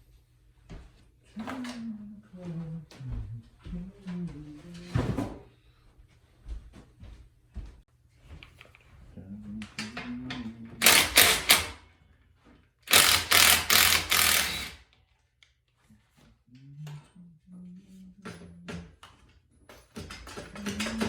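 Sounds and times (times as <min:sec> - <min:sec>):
loud mechanical rattling: 0:10.8 - 0:11.8, 0:12.9 - 0:14.8.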